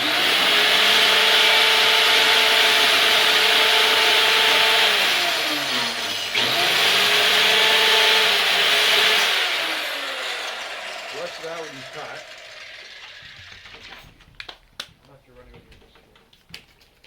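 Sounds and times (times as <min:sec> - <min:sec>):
saw rasping through wood: 0:00.0 - 0:13.6
power saw motor whine: 0:00.0 - 0:14.0.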